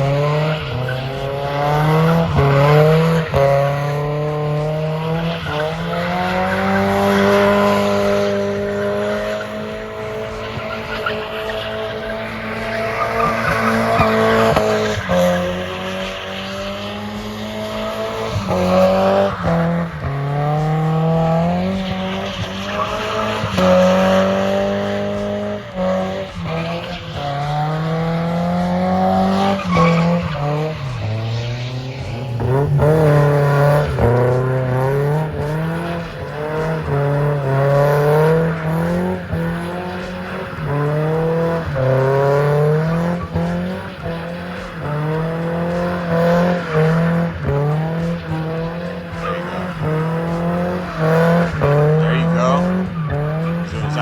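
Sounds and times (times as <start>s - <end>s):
car engine revving hard: 0.0s - 54.0s
tyres squealing: 29.3s - 54.0s.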